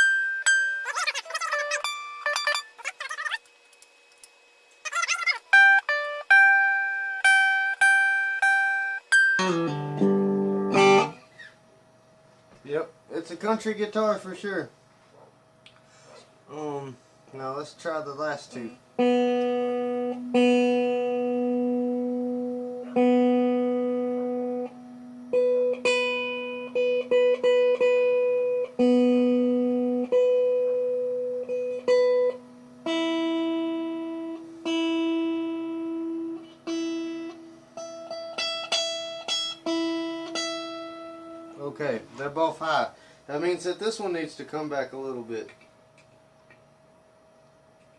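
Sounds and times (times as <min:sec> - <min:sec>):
electric guitar notes ringing: 0:00.0 - 0:02.8, 0:05.5 - 0:11.5, 0:18.8 - 0:42.6.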